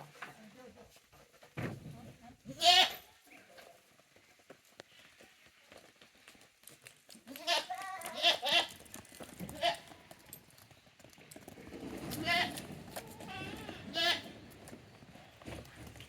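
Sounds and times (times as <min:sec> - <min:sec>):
goat kids bleating: 0:02.6 - 0:03.0, 0:07.3 - 0:08.8, 0:09.5 - 0:10.2, 0:12.2 - 0:14.4.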